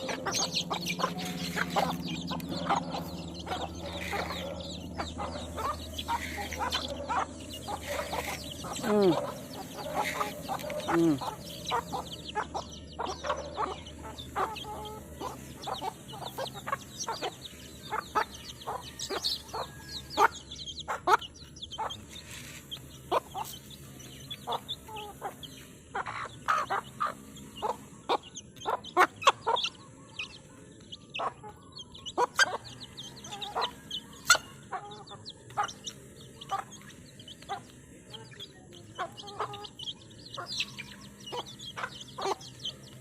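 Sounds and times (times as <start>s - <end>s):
chicks peeping: 0.0s - 43.0s
hen clucking: 0.0s - 43.0s.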